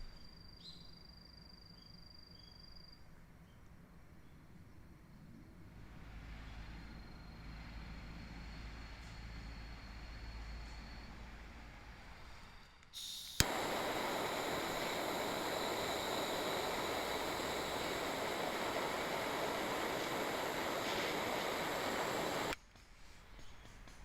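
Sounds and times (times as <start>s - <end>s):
gas burner hissing: 5.9s - 22.6s
piezo igniter click: 12.9s - 22.6s.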